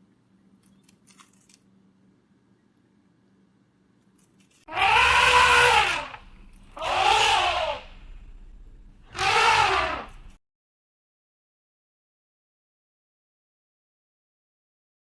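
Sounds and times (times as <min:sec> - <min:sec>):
animal calling: 0:04.7 - 0:08.4, 0:09.1 - 0:10.4.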